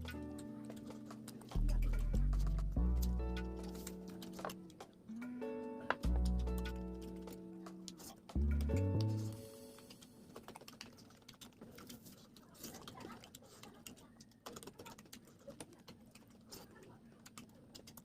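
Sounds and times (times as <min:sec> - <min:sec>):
person chewing food: 0:06.1 - 0:18.0.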